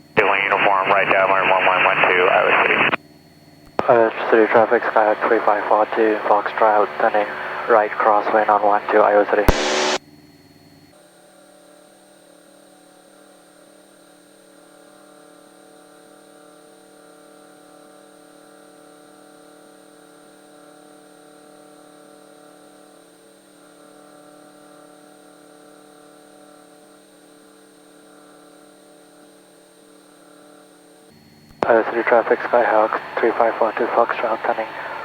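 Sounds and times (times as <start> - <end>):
light aircraft engine droning: 0.2 - 3.0, 3.8 - 10.0, 31.6 - 35.0.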